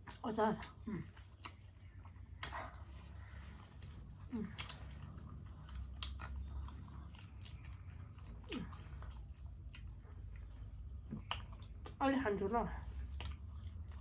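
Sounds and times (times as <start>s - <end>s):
person chewing food: 0.0s - 12.0s, 12.8s - 14.0s
soft mouth clicks: 11.1s - 11.7s.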